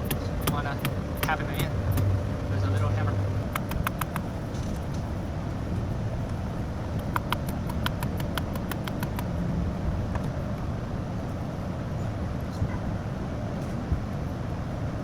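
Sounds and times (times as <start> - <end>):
light sharp taps: 0.0 - 5.1, 7.0 - 9.3
low background hum: 0.0 - 15.0.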